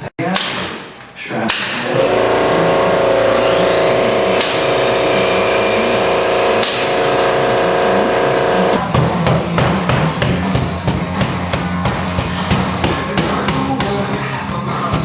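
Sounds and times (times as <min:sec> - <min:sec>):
machine humming: 0:01.8 - 0:08.8.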